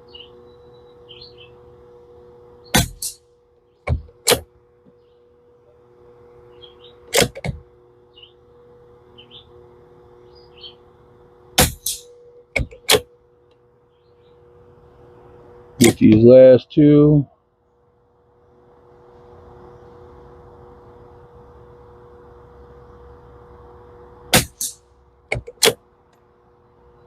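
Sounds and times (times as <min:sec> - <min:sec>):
birds chirping softly: 0:00.0 - 0:02.8, 0:04.7 - 0:07.1, 0:07.7 - 0:11.4, 0:13.1 - 0:15.7.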